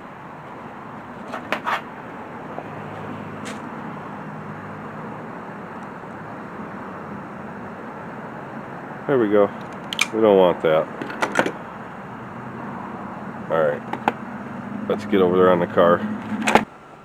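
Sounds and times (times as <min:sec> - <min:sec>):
sharp plastic clicks: 0:09.6 - 0:10.2.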